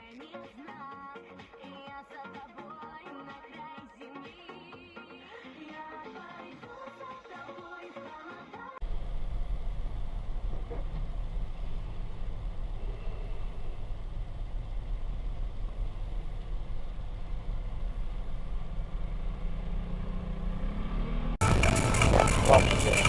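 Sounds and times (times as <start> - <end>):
road noise: 8.8 - 23.0
vehicle engine rumbling: 8.8 - 23.0.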